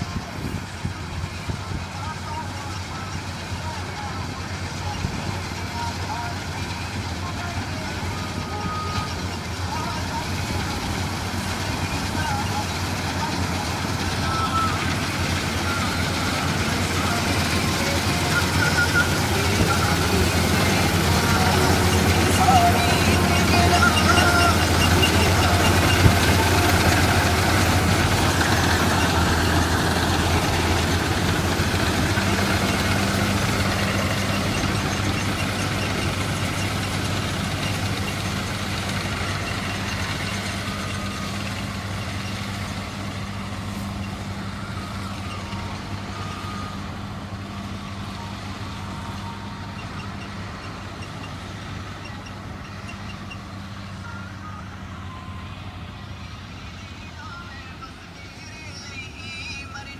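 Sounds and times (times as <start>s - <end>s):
combine harvester engine and machinery: 0.0s - 59.9s.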